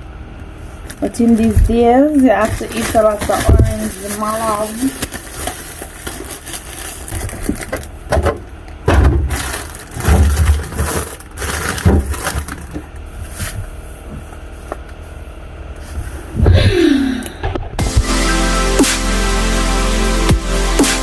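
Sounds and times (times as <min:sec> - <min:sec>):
groceries rustling and crinkling: 0:00.4 - 0:16.1.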